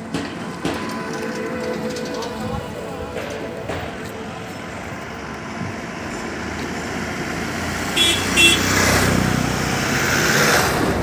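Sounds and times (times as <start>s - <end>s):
vehicle passing: 0.5s - 11.0s
car horn toots: 7.8s - 9.2s.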